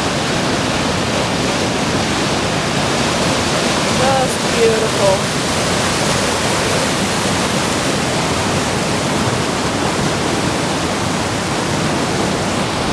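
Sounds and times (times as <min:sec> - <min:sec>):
river rushing over rocks: 0:00.0 - 0:12.9.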